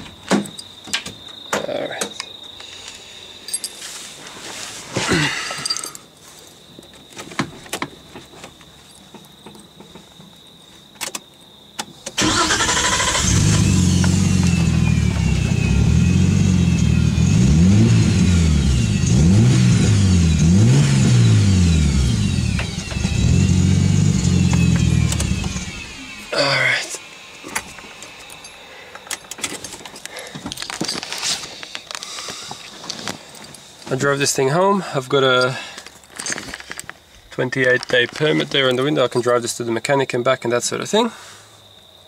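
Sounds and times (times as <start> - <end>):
car engine starting and revving: 12.2 - 26.7.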